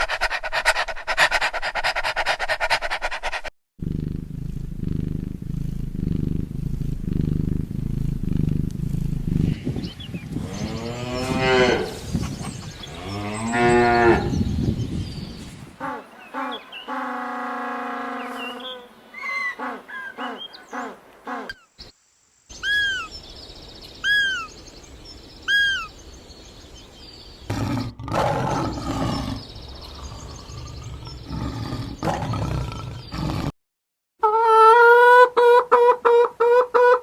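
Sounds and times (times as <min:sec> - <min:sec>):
low rough roaring: 0:03.8 - 0:12.1, 0:27.5 - 0:33.5
animal calls: 0:15.8 - 0:21.7, 0:22.6 - 0:23.1
high arching bird cries: 0:15.8 - 0:21.8, 0:22.5 - 0:24.7, 0:25.4 - 0:26.1.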